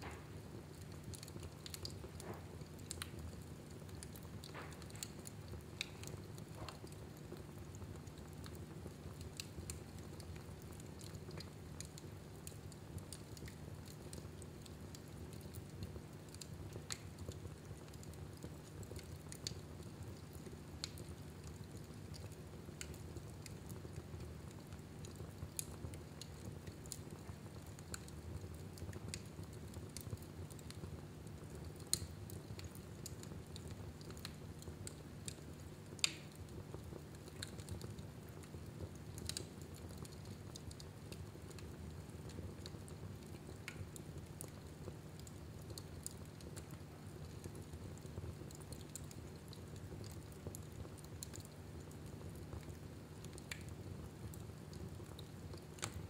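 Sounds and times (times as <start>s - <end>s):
loud fire pops: 0.0s - 0.4s, 4.4s - 5.2s
fire crackling in fireplace: 0.0s - 56.0s.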